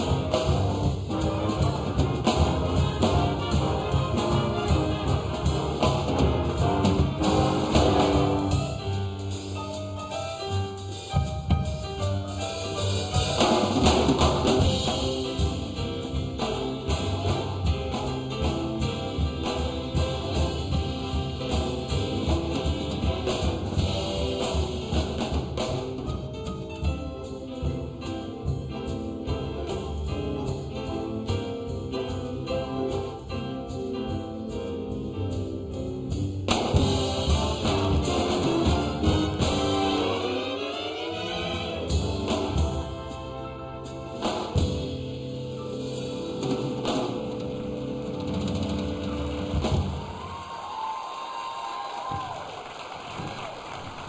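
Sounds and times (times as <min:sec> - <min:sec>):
drum kit steady beat: 0:00.0 - 0:40.4, 0:41.4 - 0:50.4
big band jazz: 0:00.0 - 0:50.8.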